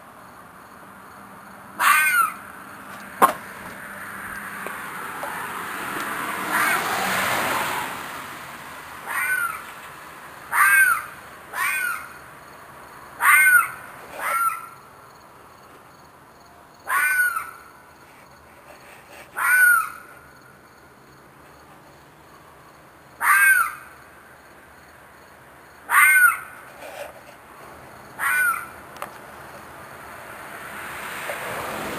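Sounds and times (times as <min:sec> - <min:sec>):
animal screeching cries: 0:01.8 - 0:02.4, 0:06.5 - 0:07.0, 0:09.0 - 0:09.7, 0:10.5 - 0:12.2, 0:13.2 - 0:14.8, 0:16.9 - 0:17.7, 0:19.3 - 0:20.1, 0:23.2 - 0:23.9, 0:25.9 - 0:26.6, 0:28.2 - 0:28.7.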